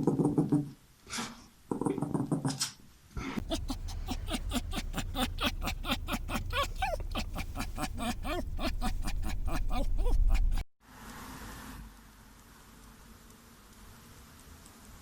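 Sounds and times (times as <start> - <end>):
dog grunting: 3.4 - 10.6.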